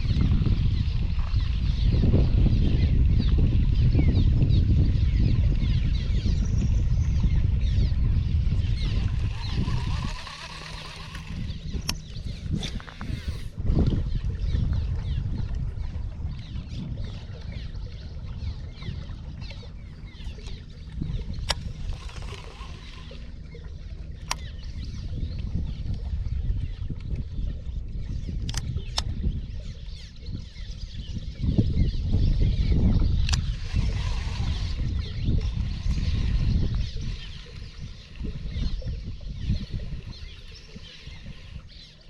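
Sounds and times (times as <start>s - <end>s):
small birds chirping: 0.0s - 15.7s, 16.4s - 42.0s
low wind rumble: 0.0s - 42.0s.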